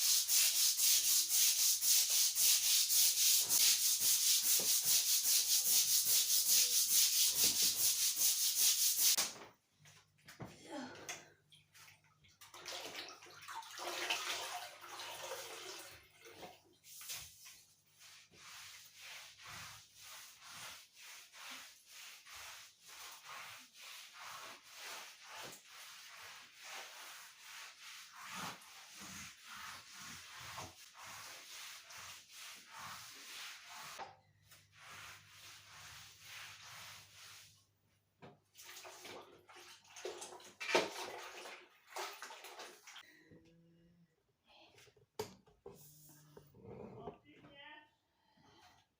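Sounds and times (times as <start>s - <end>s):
scrub brush scrubbing wet floor: 0.0s - 9.2s, 13.8s - 37.7s.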